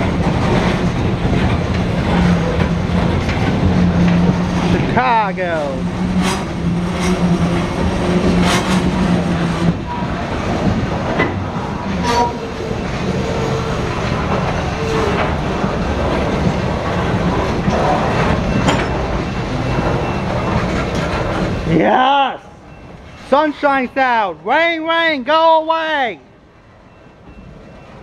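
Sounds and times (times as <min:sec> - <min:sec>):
wheels clacking over rail joints: 0:00.0 - 0:22.0
freight train rumbling past: 0:00.0 - 0:28.0.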